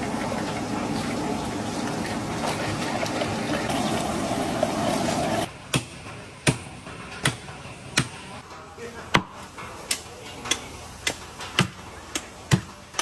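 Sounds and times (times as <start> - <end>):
water running: 0.0 - 5.5.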